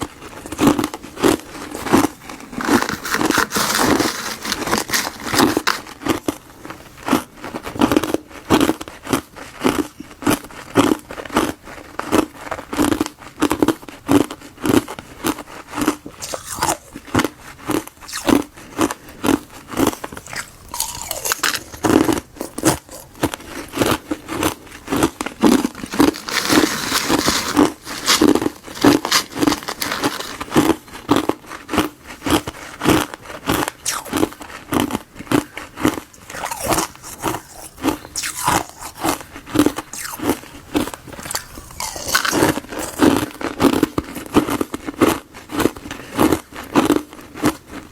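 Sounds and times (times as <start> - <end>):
crunchy chewing of frozen granules: 0.0 - 47.9.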